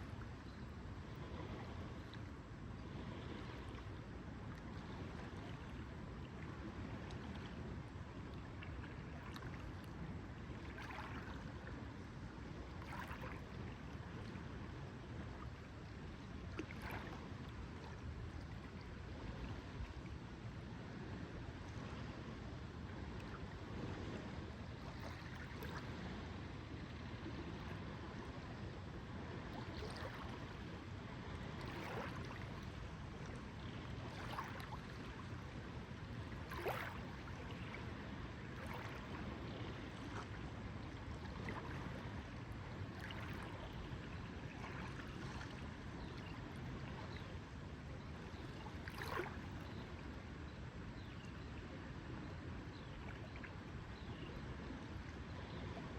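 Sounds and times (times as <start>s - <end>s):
water lapping at shore: 0.0s - 55.9s
small splashes and drips: 10.6s - 11.5s, 12.8s - 13.6s, 16.5s - 17.2s, 31.6s - 32.8s, 34.0s - 35.4s, 36.4s - 37.5s, 38.6s - 39.2s.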